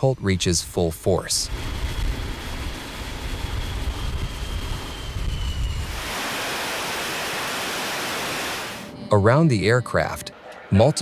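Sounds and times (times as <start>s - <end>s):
jet engine whine and rumble: 0.3s - 9.0s.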